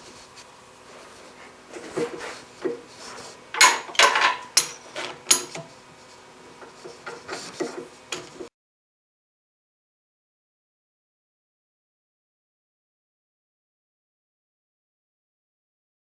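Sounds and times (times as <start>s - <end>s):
metal tools clinking and knocking: 3.5s - 5.7s.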